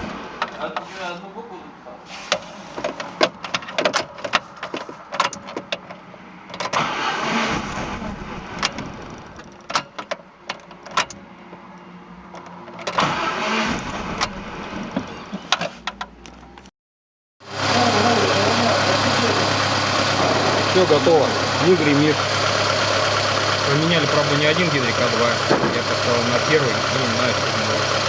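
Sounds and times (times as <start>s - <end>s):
sharp clicks and knocks: 2.8s - 6.8s, 8.6s - 11.6s
car engine cranking and starting: 5.1s - 11.2s, 12.3s - 16.7s, 17.4s - 28.0s.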